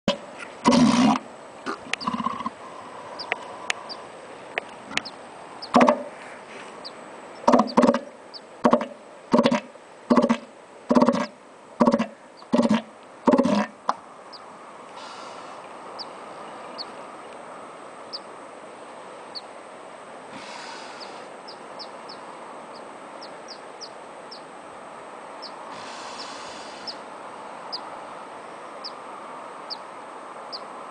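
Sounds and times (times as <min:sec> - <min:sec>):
steady hiss: 0:00.2 - 0:30.9
small birds chirping: 0:01.6 - 0:08.6, 0:14.2 - 0:18.4, 0:19.2 - 0:19.6, 0:20.4 - 0:24.6, 0:25.2 - 0:28.1, 0:28.7 - 0:29.0, 0:29.6 - 0:30.9.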